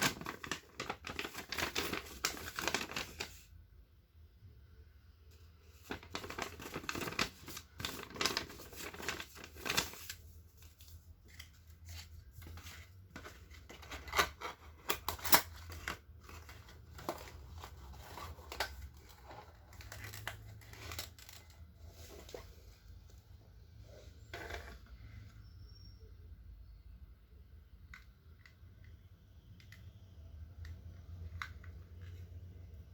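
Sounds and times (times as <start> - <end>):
packaging rustling and tearing: 0.0 - 3.5, 5.7 - 22.6.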